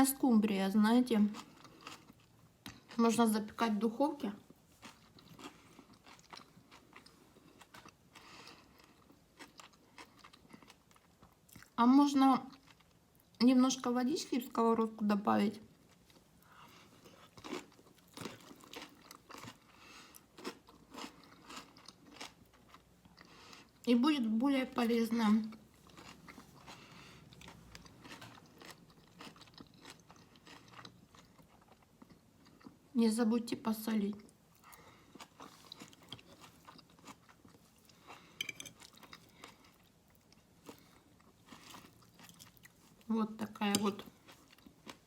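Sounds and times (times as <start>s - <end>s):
person chewing crunchy food: 1.4s - 3.0s, 4.4s - 11.8s, 15.7s - 23.9s, 25.5s - 32.8s, 34.2s - 43.1s, 43.8s - 45.0s.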